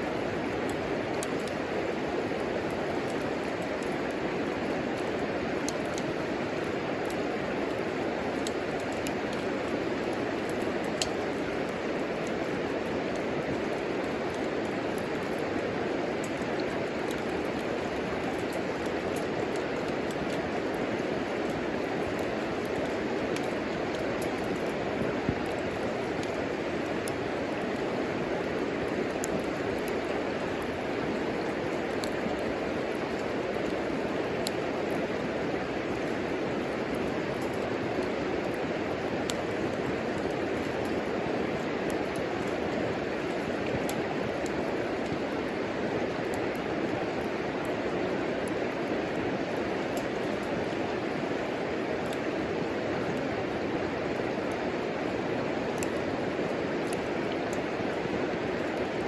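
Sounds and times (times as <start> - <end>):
steady rushing of fire: 0.0 - 59.0
wood fire crackling and popping: 0.0 - 59.0.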